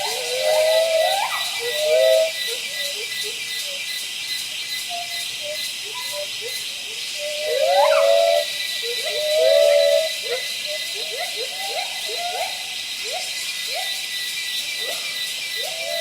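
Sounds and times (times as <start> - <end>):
monkey high-pitched calls: 0.0 - 3.0, 4.9 - 6.6, 7.2 - 14.0
steady hiss: 0.0 - 16.0.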